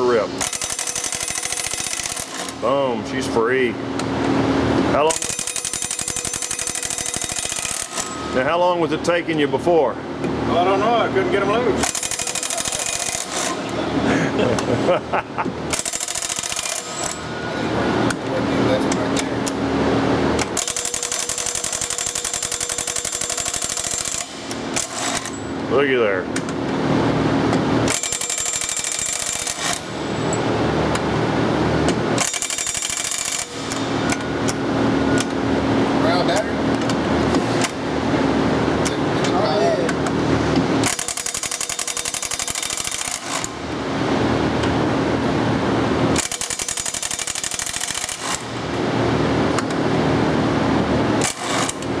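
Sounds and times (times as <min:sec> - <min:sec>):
steady low hum: 0:00.0 - 0:20.6, 0:29.5 - 0:41.0
electric impact wrench hammering: 0:00.0 - 0:52.0.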